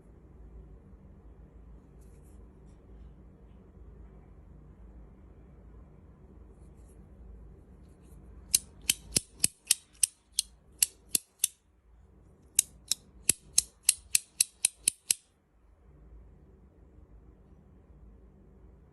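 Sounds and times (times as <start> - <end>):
fidget toy metallic clicks: 8.5 - 11.6, 12.6 - 15.3.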